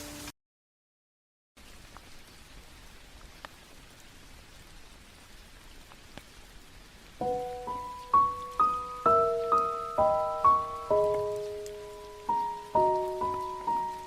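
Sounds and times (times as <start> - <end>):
steady rain falling: 0.0 - 0.3, 1.6 - 14.0.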